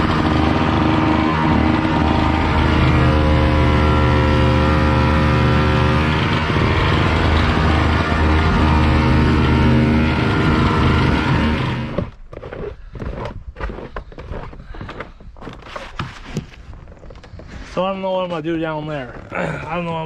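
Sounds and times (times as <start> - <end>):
snowblower engine running: 0.0 - 12.2
crunches and knocks: 12.0 - 17.6.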